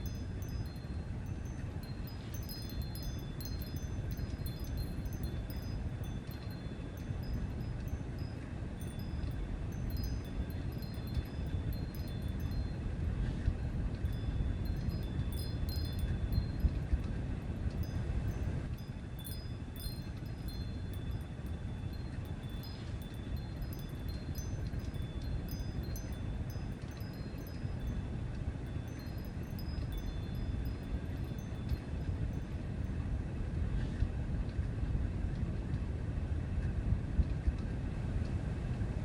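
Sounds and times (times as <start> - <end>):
steady low rumble: 0.0 - 39.0.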